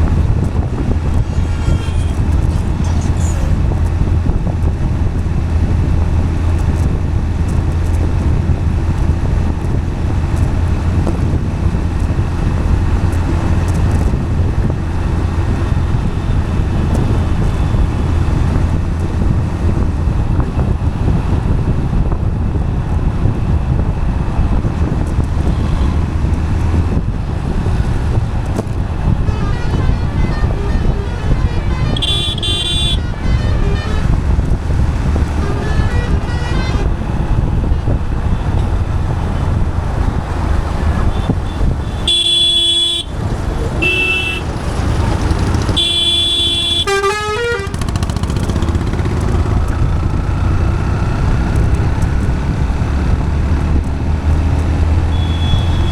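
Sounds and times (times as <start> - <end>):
road traffic rumble: 0.0 - 55.9
wind noise on microphone: 0.0 - 55.9
vehicle horns honking: 1.1 - 3.7, 29.1 - 38.7, 40.8 - 48.9, 55.1 - 55.9.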